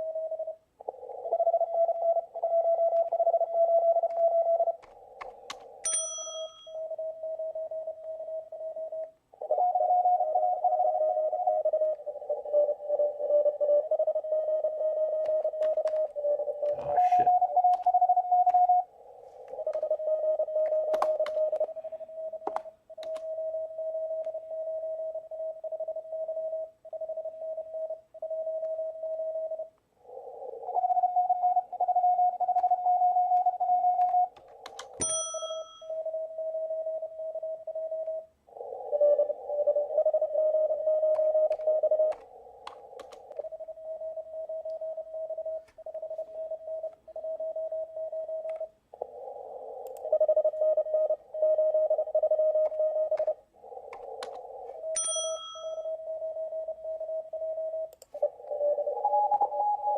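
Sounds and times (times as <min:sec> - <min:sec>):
sharp clicks: 0:04.0 - 0:06.1, 0:22.4 - 0:23.3, 0:32.6 - 0:35.2, 0:41.1 - 0:43.5, 0:49.8 - 0:50.1, 0:52.6 - 0:54.5
radio band noise: 0:15.4 - 0:17.9
morse code tones: 0:39.0 - 0:42.2, 0:50.1 - 0:53.4, 0:54.3 - 0:59.9.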